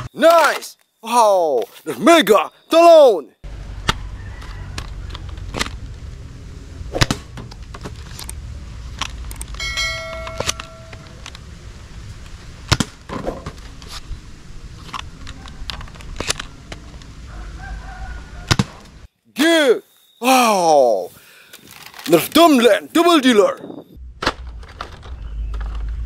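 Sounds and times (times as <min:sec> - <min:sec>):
brief ringing tone: 0:09.6 - 0:11.1.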